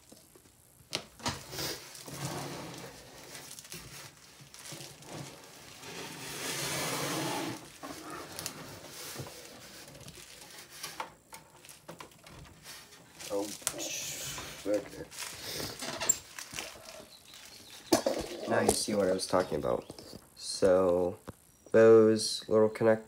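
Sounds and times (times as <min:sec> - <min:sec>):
rustling and scraping: 0:01.2 - 0:20.4.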